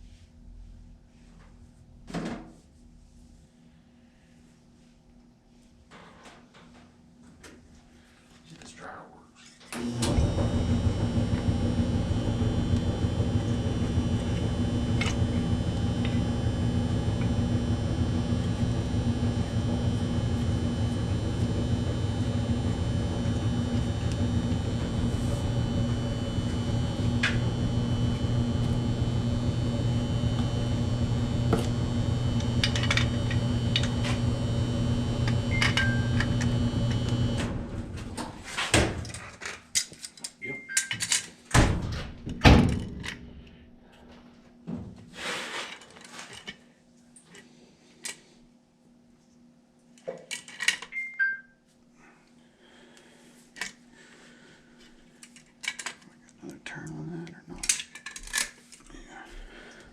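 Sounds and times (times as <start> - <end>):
clothes dryer humming: 9.7 - 39.7, 50.0 - 55.9, 57.6 - 59.9.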